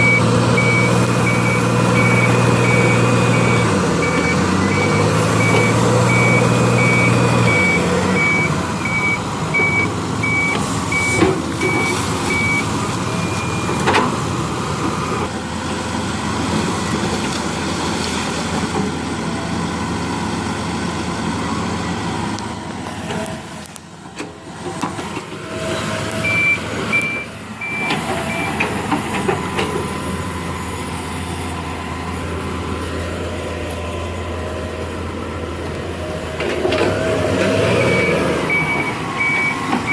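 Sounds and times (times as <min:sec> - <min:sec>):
reversing alarm beeping: 0:00.0 - 0:13.8, 0:26.2 - 0:28.6, 0:37.7 - 0:39.9
heavy diesel machinery running: 0:00.0 - 0:39.9.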